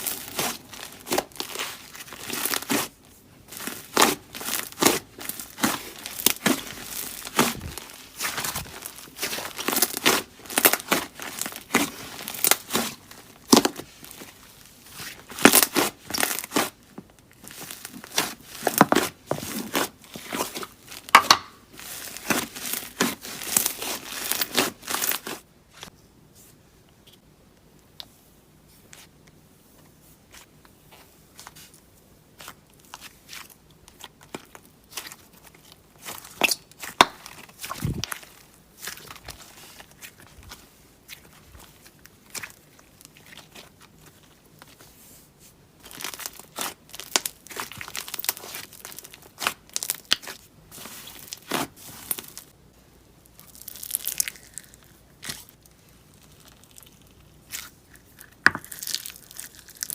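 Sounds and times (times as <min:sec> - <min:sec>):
slime crackling and popping: 0:00.0 - 0:02.9, 0:03.5 - 0:14.2, 0:14.9 - 0:16.8, 0:45.8 - 0:52.5, 0:53.2 - 0:59.9.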